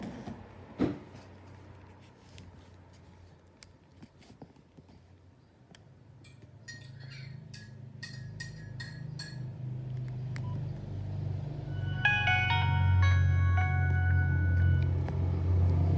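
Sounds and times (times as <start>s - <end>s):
low hum: 10.4s - 15.9s.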